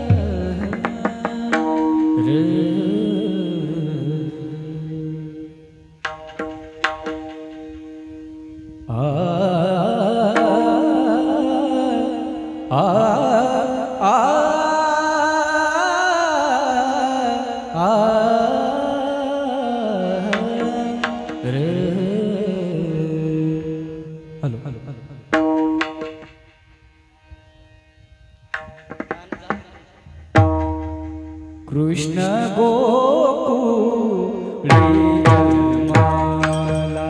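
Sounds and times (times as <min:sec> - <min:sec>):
person singing devotional song: 0:00.0 - 0:05.9, 0:08.8 - 0:25.3, 0:31.6 - 0:37.0
hand drum strokes: 0:06.0 - 0:08.2, 0:28.5 - 0:31.7, 0:34.7 - 0:37.0.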